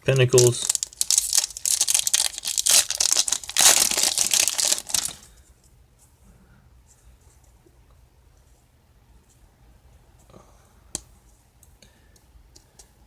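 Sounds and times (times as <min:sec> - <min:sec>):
paper wrapper crinkling and tearing: 0:00.1 - 0:05.4.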